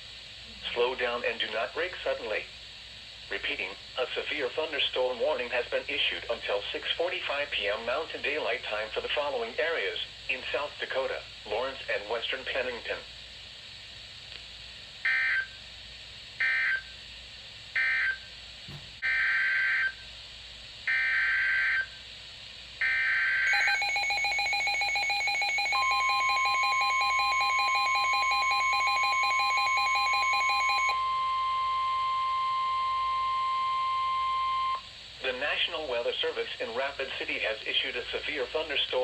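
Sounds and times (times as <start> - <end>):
two-tone attention signal: 23.4 - 34.9
warbling data tone bursts: 23.5 - 34.9
steady single tone: 29.7 - 34.9.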